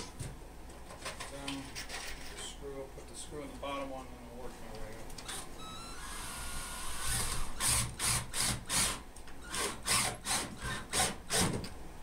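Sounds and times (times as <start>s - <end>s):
screw rasping into wood: 6.0s - 11.6s.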